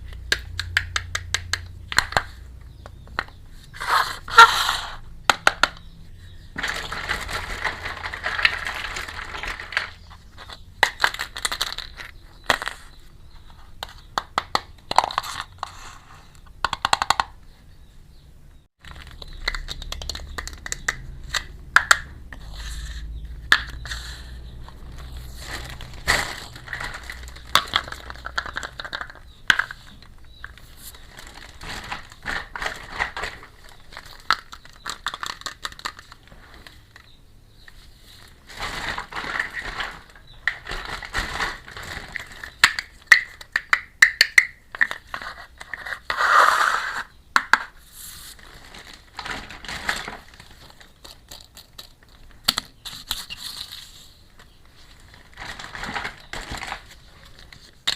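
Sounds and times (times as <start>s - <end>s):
plastic packaging crinkling: 6.5s - 13.0s, 18.8s - 37.0s, 38.2s - 43.7s, 47.8s - 57.9s.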